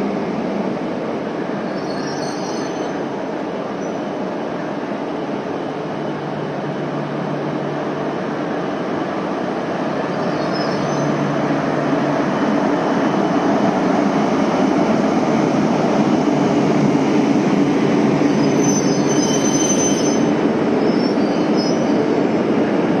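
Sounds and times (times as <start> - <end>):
train rumbling: 0.0 - 23.0
train wheels squealing: 1.6 - 3.0, 3.8 - 4.1, 10.1 - 11.2, 18.2 - 22.0.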